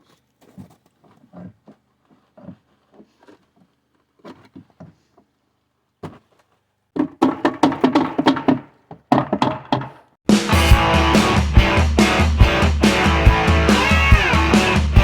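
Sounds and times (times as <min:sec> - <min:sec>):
wood knocking and tapping: 0:07.0 - 0:10.0
music with fast beat: 0:10.3 - 0:15.0.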